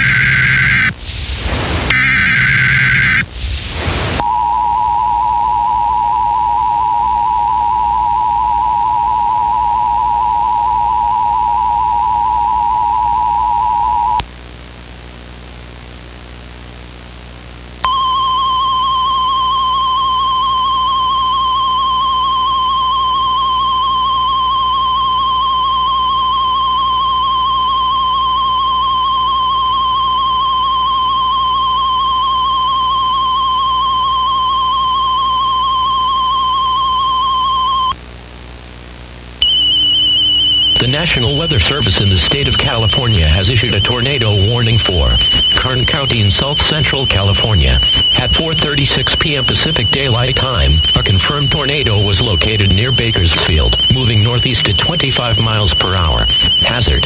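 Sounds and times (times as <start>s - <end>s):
tape hiss and hum: 0.0s - 57.0s
wavering alert tone: 39.4s - 52.4s.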